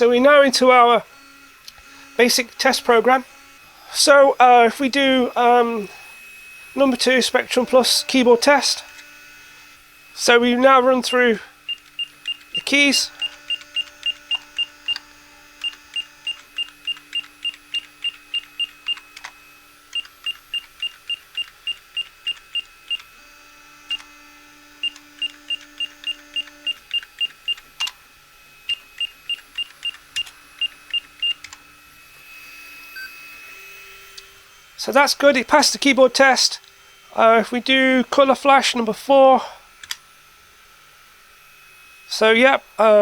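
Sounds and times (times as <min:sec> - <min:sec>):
short high computer beeps: 0:28.7 - 0:31.4.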